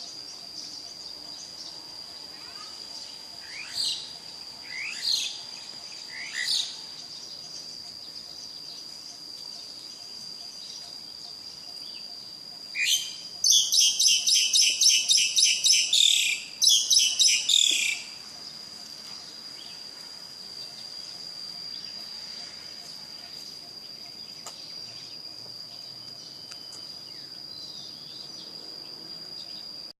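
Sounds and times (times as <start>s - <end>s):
high insect trill: 0.0s - 30.0s
bird chirping rapidly: 12.8s - 18.2s.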